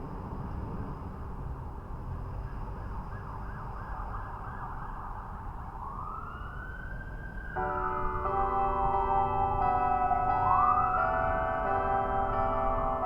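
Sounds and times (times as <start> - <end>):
emergency vehicle siren wailing: 2.2 - 13.0
bells chiming: 7.6 - 13.0.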